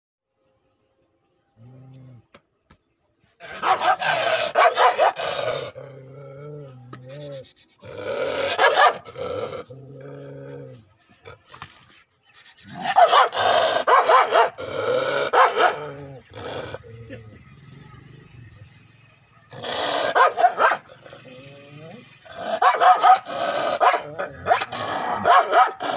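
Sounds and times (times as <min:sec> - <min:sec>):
dog barking: 0:03.5 - 0:05.4, 0:08.6 - 0:09.0, 0:12.8 - 0:14.6, 0:15.3 - 0:15.9, 0:19.8 - 0:20.9, 0:22.4 - 0:25.9
dog drawn-out calls: 0:03.5 - 0:05.7, 0:19.5 - 0:21.2, 0:22.2 - 0:25.9.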